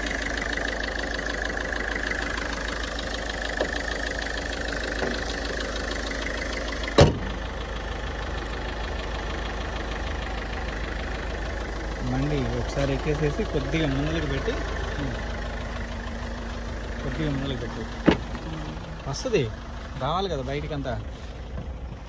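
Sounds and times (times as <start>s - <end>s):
diesel engine idling: 0.0s - 22.0s.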